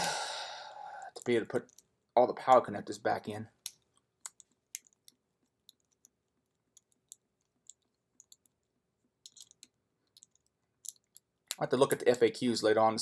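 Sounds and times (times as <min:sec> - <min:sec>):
small lock parts clicking: 0:03.6 - 0:11.6.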